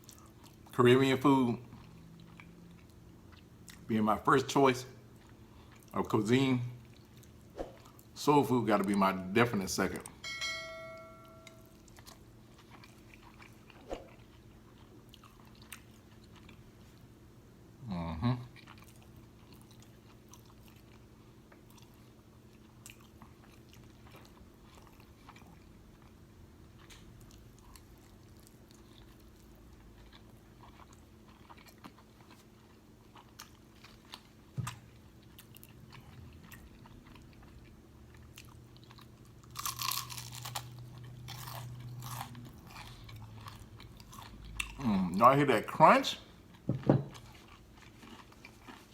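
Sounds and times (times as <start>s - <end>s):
chewing and biting food: 0.0s - 0.8s, 1.6s - 3.9s, 11.6s - 17.1s, 18.5s - 45.2s, 46.3s - 48.9s.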